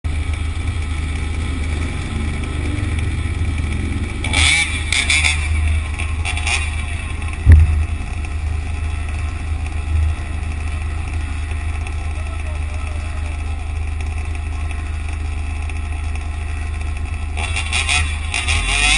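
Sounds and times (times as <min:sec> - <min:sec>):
road traffic rumble: 0:00.0 - 0:18.9
sharp knock: 0:07.4 - 0:08.1.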